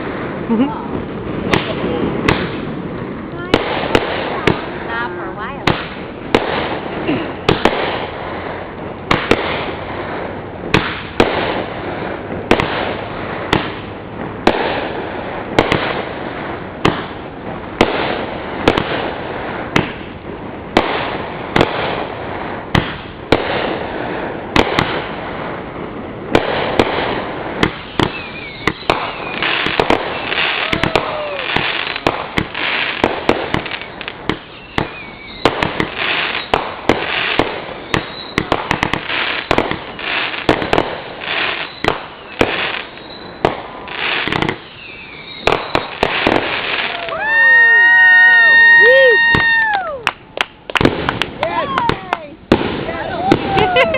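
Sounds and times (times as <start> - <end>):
fireworks crackling: 0.0 - 53.9
firework whistles: 26.4 - 50.0.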